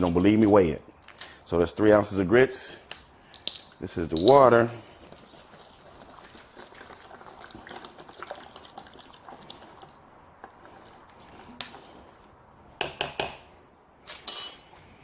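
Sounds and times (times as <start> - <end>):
water pouring into a pot: 5.4 - 11.4.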